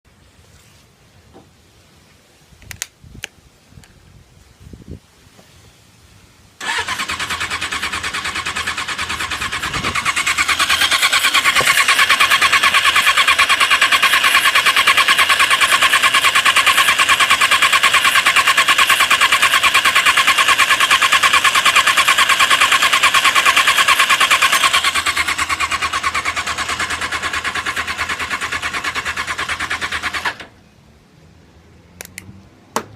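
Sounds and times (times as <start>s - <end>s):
motorcycle starter cranking: 6.6s - 30.6s.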